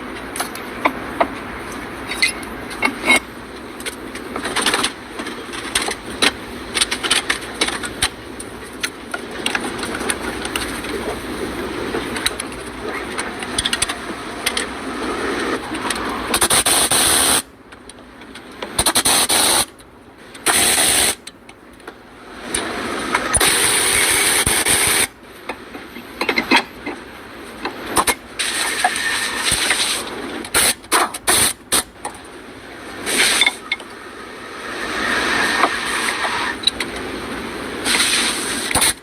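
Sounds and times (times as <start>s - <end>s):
power tool bursts: 16.3s - 17.5s, 20.4s - 21.2s, 23.2s - 25.1s, 37.8s - 39.0s.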